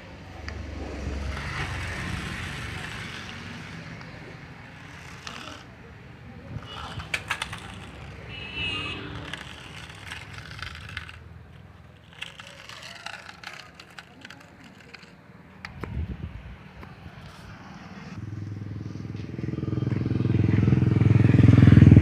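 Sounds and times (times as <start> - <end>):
toy car motor rumble: 0.7 - 15.8.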